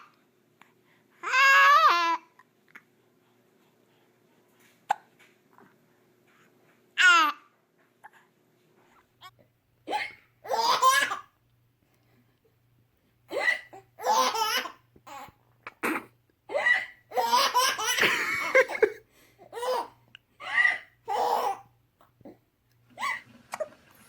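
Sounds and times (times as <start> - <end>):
baby laughing: 9.9 - 11.3, 13.3 - 15.4, 16.5 - 21.6.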